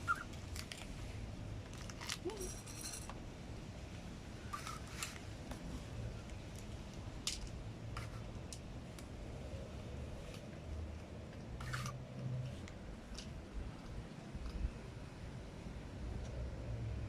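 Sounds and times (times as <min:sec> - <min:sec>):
crinkly rattle: 0:01.6 - 0:03.1.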